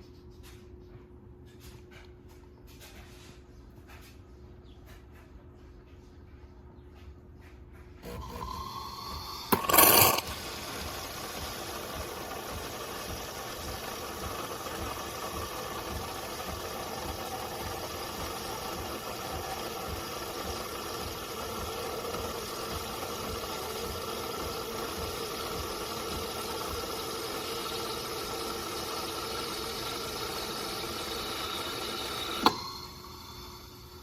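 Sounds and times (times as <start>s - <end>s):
espresso machine motor hum: 8.0s - 34.0s.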